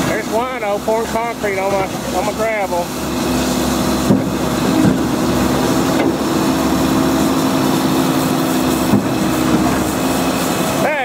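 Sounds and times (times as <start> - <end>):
truck engine humming: 0.0 - 11.0.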